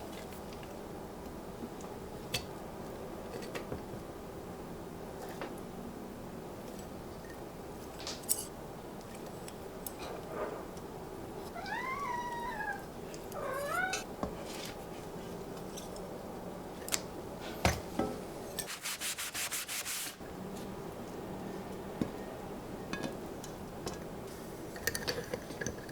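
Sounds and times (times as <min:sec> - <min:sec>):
cat meowing: 0:11.5 - 0:14.1
short scraping strokes: 0:18.6 - 0:20.2.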